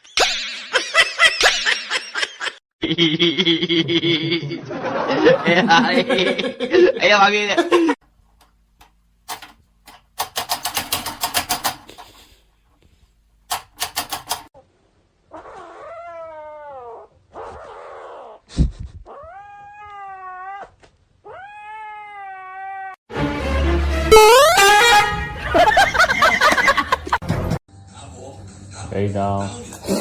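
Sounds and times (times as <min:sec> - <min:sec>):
rapid clicks or taps: 0:08.4 - 0:12.1, 0:13.5 - 0:14.5
cat yowling: 0:15.3 - 0:17.6, 0:19.1 - 0:23.0.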